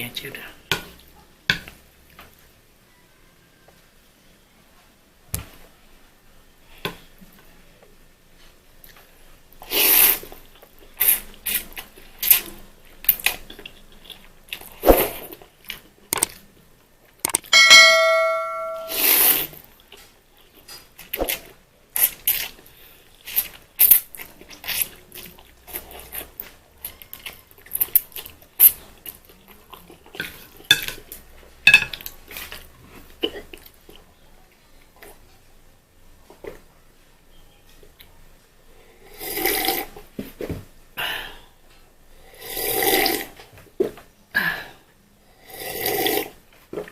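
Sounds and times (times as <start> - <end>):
noodle slurping and chewing: 9.6 - 16.4, 20.4 - 30.7, 39.0 - 40.1, 42.3 - 43.5, 45.5 - 46.4
metal utensil clinking dish: 17.6 - 19.0.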